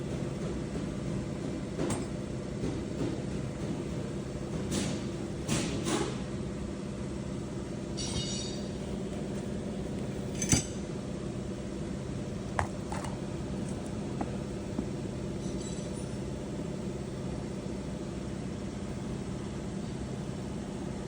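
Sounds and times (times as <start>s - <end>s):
steady low hum: 0.0s - 21.0s
ringing metallic note: 8.0s - 8.7s
metal tools clinking: 15.4s - 16.2s.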